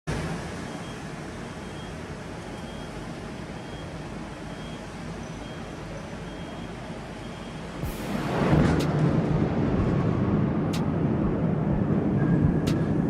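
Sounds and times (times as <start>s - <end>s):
city background hiss and rumble: 0.1s - 13.0s
faint short high-pitched beeps: 1.6s - 3.0s, 3.6s - 7.7s.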